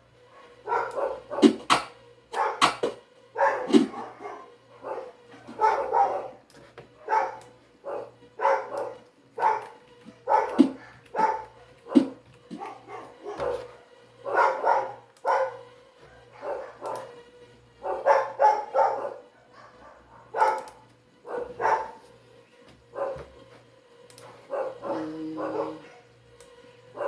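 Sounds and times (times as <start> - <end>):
dog barking: 0.3 - 2.8, 3.4 - 6.4, 7.0 - 17.2, 17.8 - 22.0, 22.9 - 23.3, 24.2 - 26.2.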